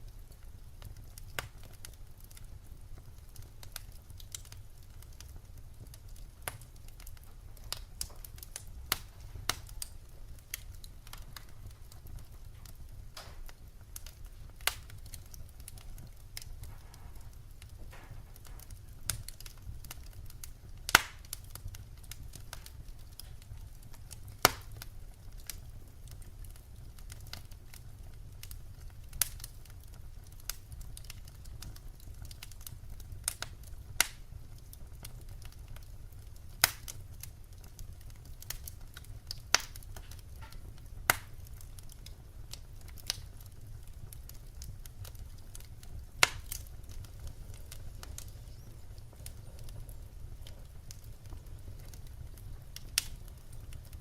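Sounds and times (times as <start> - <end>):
fire crackling and popping: 0.0 - 54.0
low fire rumble: 0.0 - 54.0.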